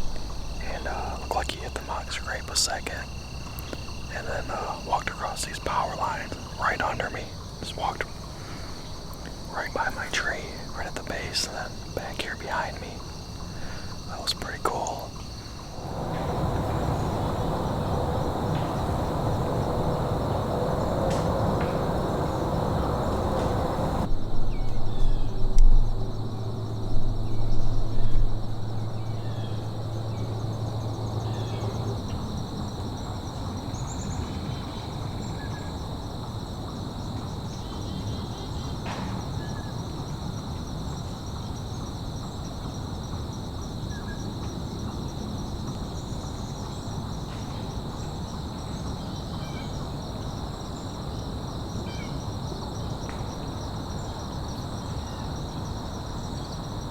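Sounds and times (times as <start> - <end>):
distant engine drone: 0.0 - 24.2
insects trilling: 0.0 - 56.9.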